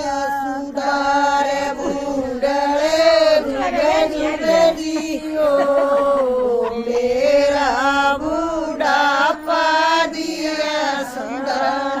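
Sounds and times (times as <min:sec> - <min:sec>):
women singing folk song: 0:00.0 - 0:12.0.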